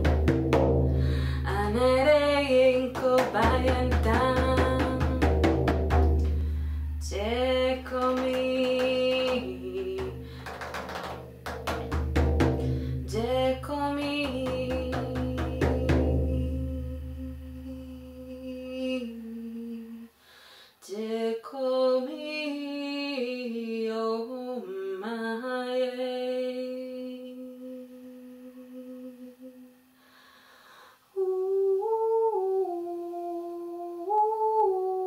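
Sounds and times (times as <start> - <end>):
steady drumbeat: 0.0 - 17.0
woman singing wordless chant: 0.0 - 20.2, 20.8 - 29.9, 31.1 - 35.0.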